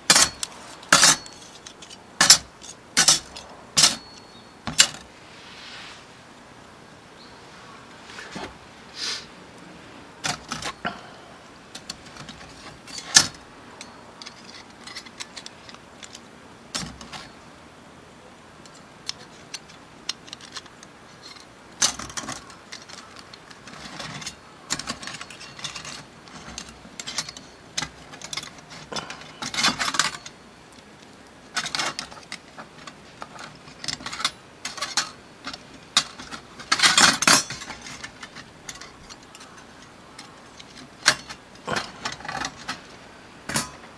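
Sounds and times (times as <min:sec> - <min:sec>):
metal parts clinking and clattering: 0:00.0 - 0:05.1, 0:10.2 - 0:11.0, 0:11.7 - 0:17.4, 0:18.6 - 0:43.9.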